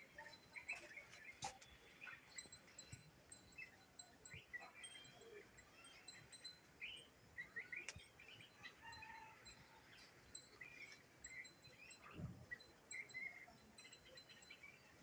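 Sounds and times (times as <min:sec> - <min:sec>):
faint high bird chirps: 0:00.1 - 0:15.0.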